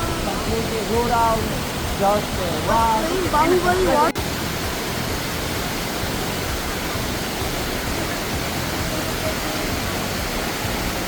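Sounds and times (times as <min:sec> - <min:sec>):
waterfall rushing: 0:00.0 - 0:11.0.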